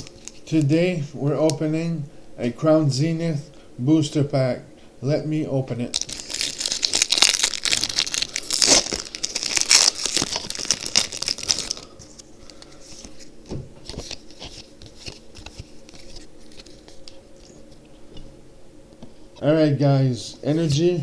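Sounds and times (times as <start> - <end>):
foil wrapper tearing and crinkling: 0.0 - 0.7, 6.0 - 13.3
cards rustling and clicking: 6.0 - 17.8.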